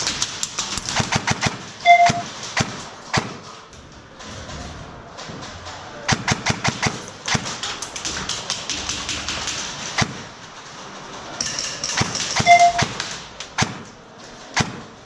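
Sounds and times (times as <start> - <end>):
airsoft guns firing: 0.0 - 3.7, 6.0 - 10.4, 11.4 - 15.0.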